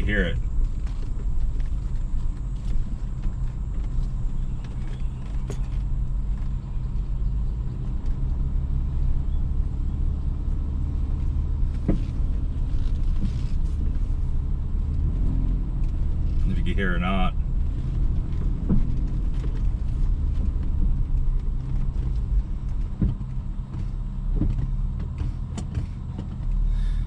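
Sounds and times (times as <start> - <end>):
car engine rumble: 0.0 - 27.0
sharp suspension knocks: 11.2 - 14.1, 18.0 - 26.6.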